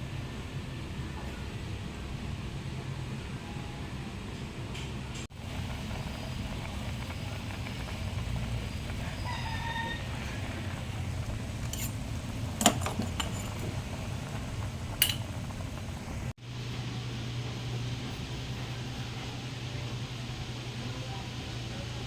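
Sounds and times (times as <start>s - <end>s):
steady low hum: 0.0s - 22.0s
utensil clinking on cookware: 11.6s - 14.0s, 14.6s - 15.6s.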